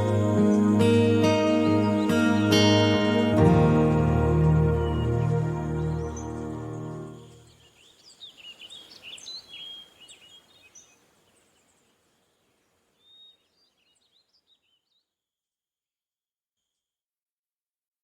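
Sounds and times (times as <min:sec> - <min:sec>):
gentle guitar music: 0:00.0 - 0:07.5
birds chirping: 0:00.0 - 0:15.0.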